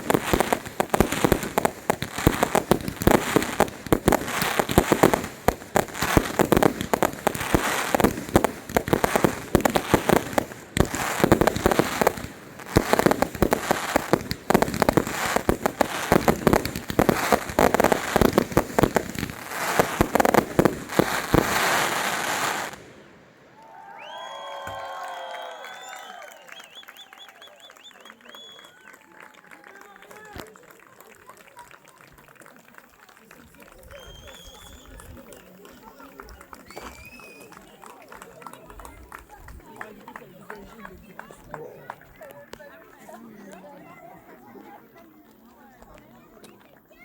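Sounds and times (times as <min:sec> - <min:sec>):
fireworks bangs and crackles: 0:00.0 - 0:23.3, 0:33.1 - 0:43.1.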